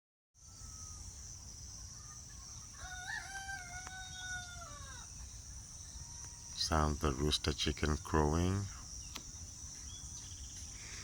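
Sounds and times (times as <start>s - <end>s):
rooster crowing: 2.7s - 5.2s.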